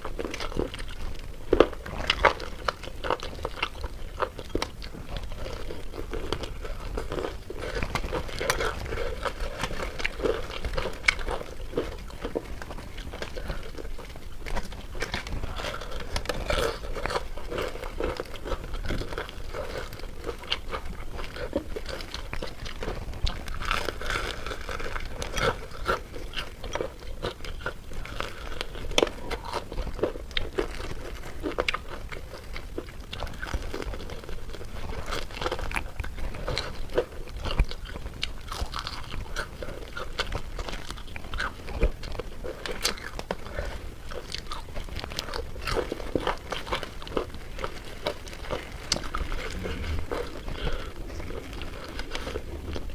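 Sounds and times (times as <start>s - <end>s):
crackles: 0.0s - 52.9s
crunchy bites: 0.0s - 52.9s
wet chewing: 0.0s - 52.9s.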